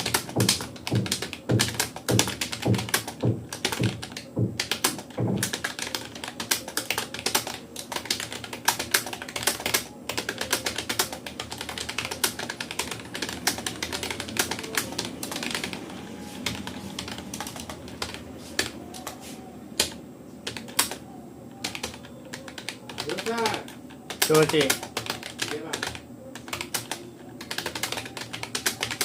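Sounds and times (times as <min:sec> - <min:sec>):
keyboard typing: 0:00.0 - 0:29.0.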